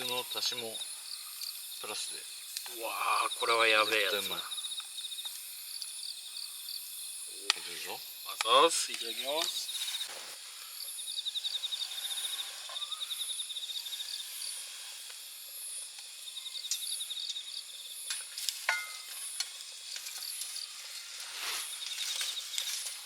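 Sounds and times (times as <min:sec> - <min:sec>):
insects trilling: 0:00.0 - 0:23.0
food sizzling in a frying pan: 0:11.4 - 0:23.0.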